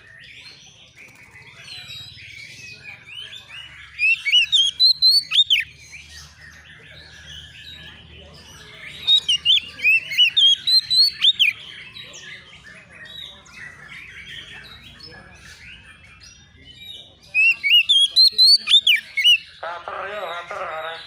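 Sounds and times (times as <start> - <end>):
faint bird chirping: 0.0 - 21.0
bird singing whistled phrases: 4.0 - 5.7, 9.0 - 11.6, 17.4 - 19.4.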